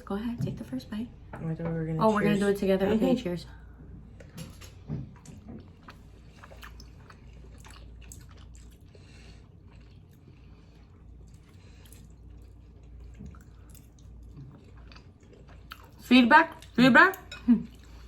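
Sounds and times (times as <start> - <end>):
faint low hum: 0.0 - 18.0
people chewing food: 3.6 - 18.0.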